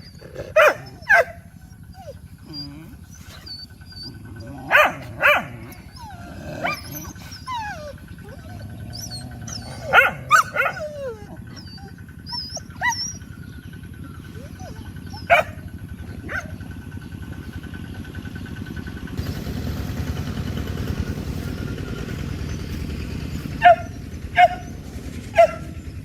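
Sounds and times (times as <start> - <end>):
dogs barking: 0.0 - 18.4, 20.9 - 26.0.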